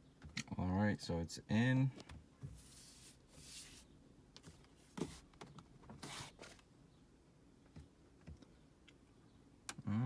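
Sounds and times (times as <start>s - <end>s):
rustling scrapes: 2.4s - 3.9s.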